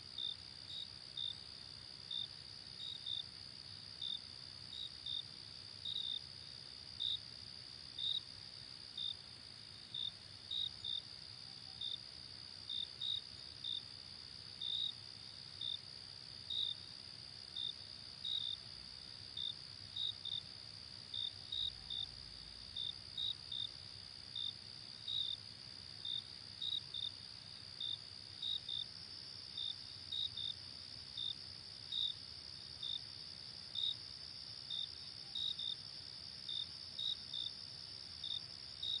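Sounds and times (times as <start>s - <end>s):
nearby cricket chirping: 8.0s - 39.0s.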